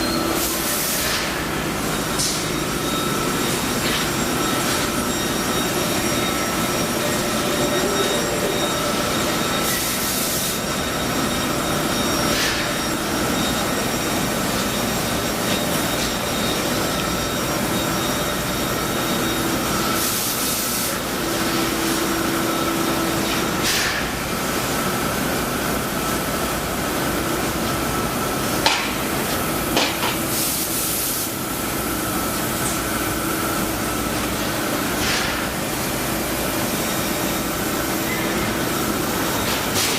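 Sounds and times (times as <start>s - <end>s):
laser cutter hum and hiss: 0.0s - 39.9s
high steady tone: 1.7s - 23.1s.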